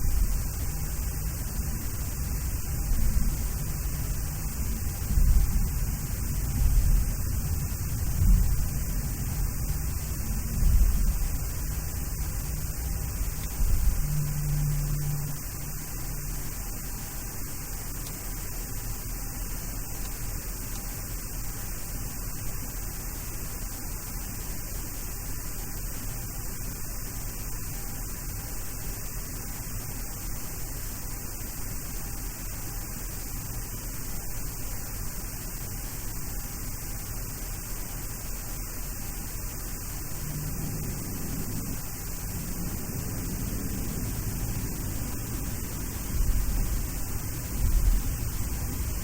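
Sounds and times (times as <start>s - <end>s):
cockpit hiss and hum: 0.0s - 49.0s
low rumble: 40.0s - 49.0s.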